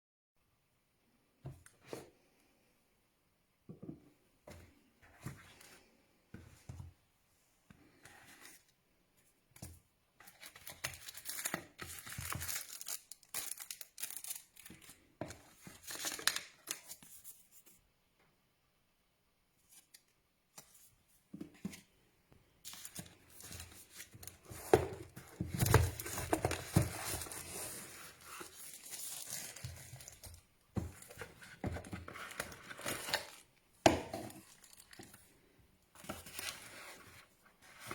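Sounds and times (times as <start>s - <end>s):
plastic wrapping tearing and crinkling: 11.0s - 14.8s.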